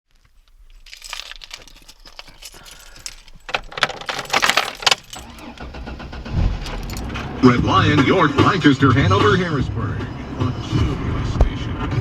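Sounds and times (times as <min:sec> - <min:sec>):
handling clicks and light rattles: 0:00.2 - 0:07.3.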